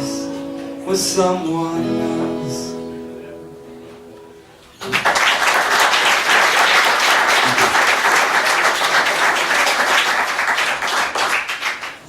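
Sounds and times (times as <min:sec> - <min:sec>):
acoustic guitar chord: 0:00.0 - 0:04.8
audience applauding: 0:04.8 - 0:12.0.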